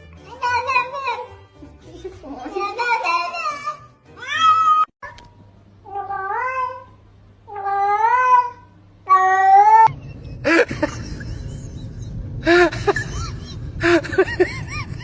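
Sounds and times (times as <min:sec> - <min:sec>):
cat meowing: 0:05.9 - 0:06.9, 0:07.5 - 0:09.9.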